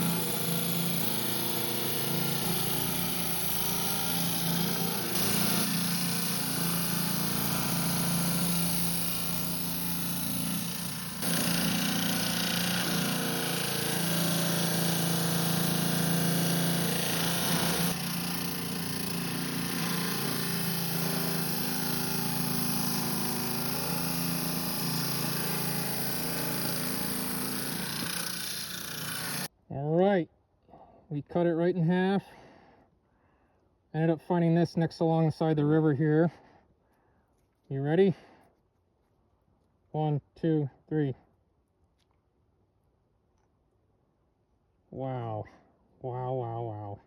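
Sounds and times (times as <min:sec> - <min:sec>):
blade grinding rock: 0:00.0 - 0:29.5
saw motor humming: 0:00.0 - 0:29.5.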